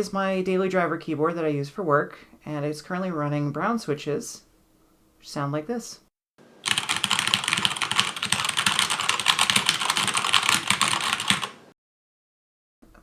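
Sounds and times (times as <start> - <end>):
mechanical keyboard typing: 6.6 - 11.6.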